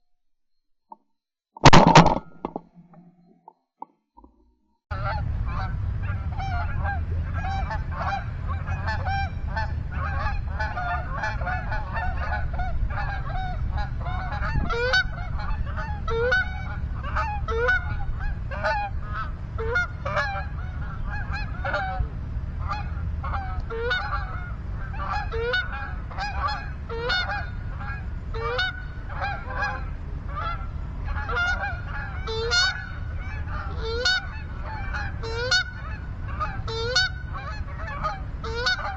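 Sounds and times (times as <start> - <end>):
geese honking: 4.9 - 38.9
wind on microphone: 5.0 - 33.8.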